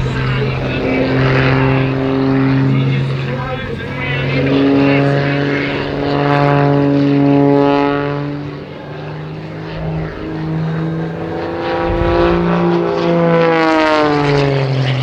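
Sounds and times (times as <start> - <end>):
biplane engine and propeller: 0.0 - 15.0.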